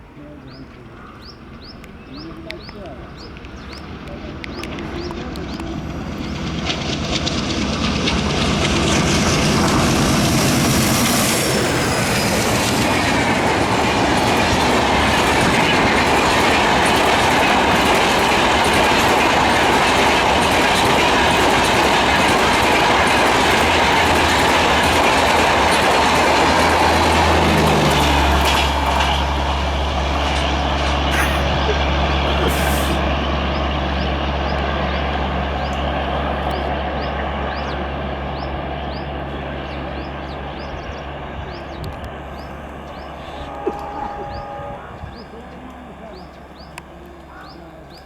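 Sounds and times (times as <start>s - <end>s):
train wheels clattering over rail joints: 6.6s - 32.5s
high squeal: 42.3s - 45.7s.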